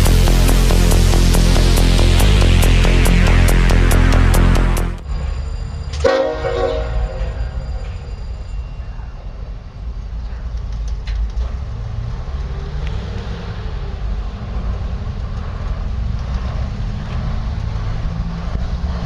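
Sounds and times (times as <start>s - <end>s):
locomotive engines rumbling: 0.0s - 19.0s.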